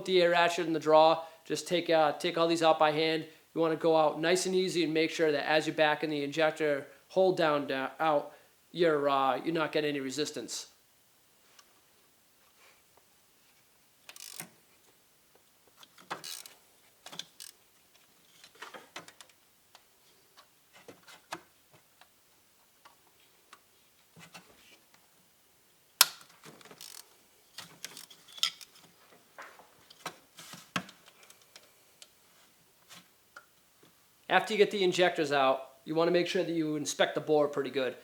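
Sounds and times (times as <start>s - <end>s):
hand ratchet clicking: 14.1s - 14.5s, 16.0s - 17.6s, 26.0s - 27.1s.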